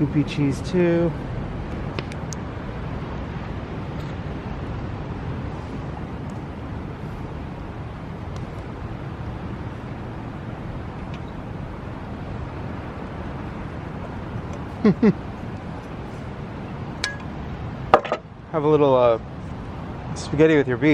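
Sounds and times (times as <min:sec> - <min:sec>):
low rushing background noise: 0:00.0 - 0:20.9.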